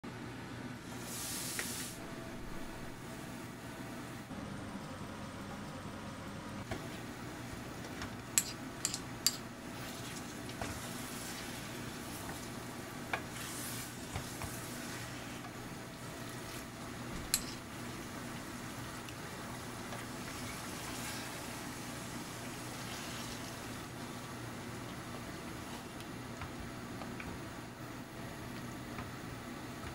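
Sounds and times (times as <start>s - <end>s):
food sizzling in a pot: 1.0s - 2.0s, 8.4s - 26.0s.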